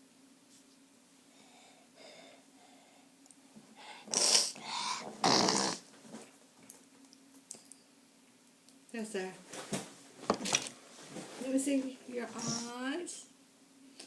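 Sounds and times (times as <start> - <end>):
puffs of breath: 1.2 - 5.1.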